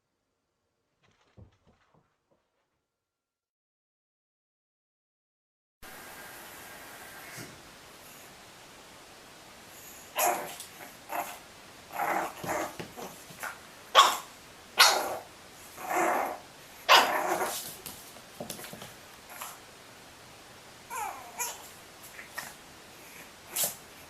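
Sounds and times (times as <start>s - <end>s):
dog barking: 13.9s - 15.3s, 16.9s - 17.6s.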